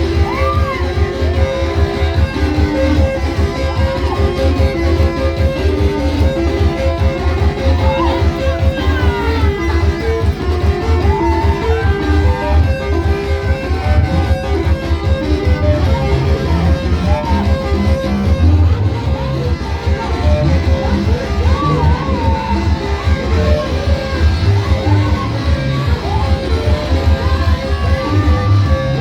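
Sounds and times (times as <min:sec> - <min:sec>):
guitar lines: 0:00.0 - 0:29.0
heavy bass beat: 0:00.0 - 0:29.0.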